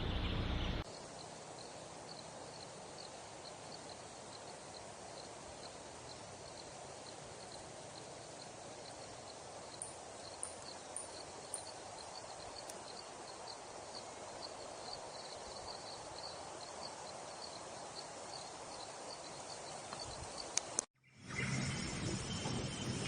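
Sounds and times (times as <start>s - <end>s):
steady hiss: 0.0s - 23.0s
light ticks: 19.9s - 20.9s.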